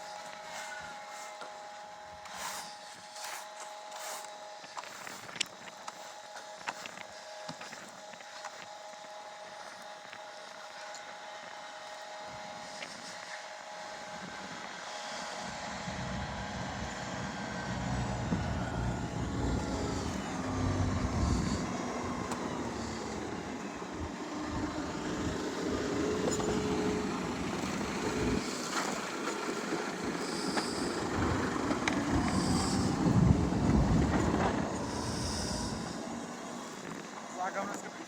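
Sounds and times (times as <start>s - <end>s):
faint sliding tones: 15.2s - 29.0s
vehicle engine rumble: 15.4s - 29.4s, 30.0s - 36.6s.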